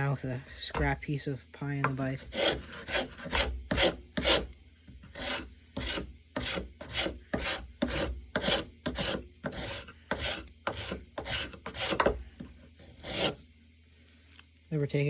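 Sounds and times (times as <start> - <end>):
spokeshave rasping across wood: 1.8 - 12.2, 12.8 - 13.4.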